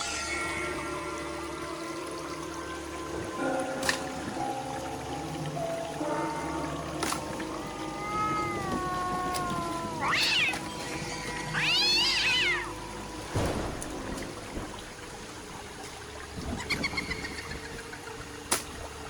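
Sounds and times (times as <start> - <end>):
animal calling: 7.7 - 12.8.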